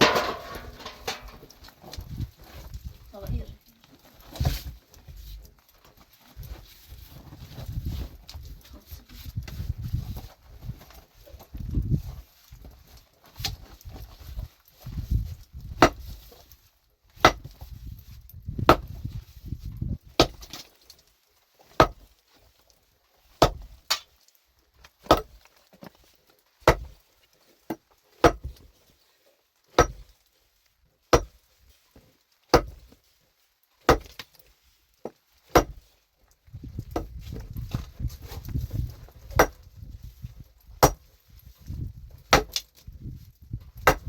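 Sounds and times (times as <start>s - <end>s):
hand tool striking hard material: 0.0s - 1.5s, 15.8s - 16.2s, 17.2s - 17.6s, 20.2s - 20.6s, 21.7s - 22.0s, 23.4s - 24.1s, 26.6s - 27.0s, 29.7s - 30.1s, 31.1s - 31.4s, 32.5s - 32.9s, 33.9s - 34.3s, 35.5s - 35.9s, 39.3s - 39.6s, 40.8s - 41.1s, 42.3s - 42.6s, 43.8s - 44.0s.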